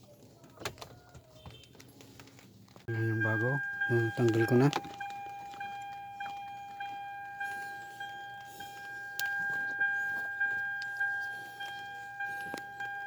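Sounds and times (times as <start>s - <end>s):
car warning chime dinging: 2.9s - 13.0s.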